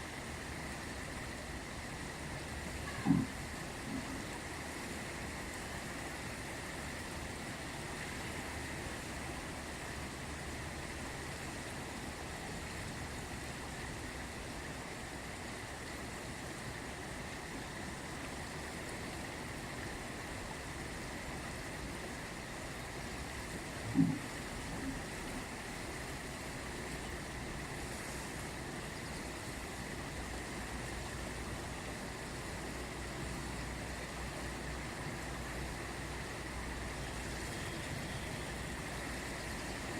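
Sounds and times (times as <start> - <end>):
river water rushing: 0.0 - 39.9
short thump: 2.9 - 3.3.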